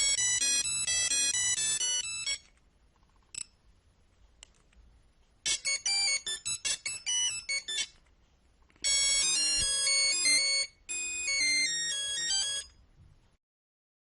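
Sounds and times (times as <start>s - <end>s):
monophonic ringtone beeps: 0.0s - 2.5s, 5.5s - 8.0s, 8.8s - 12.8s.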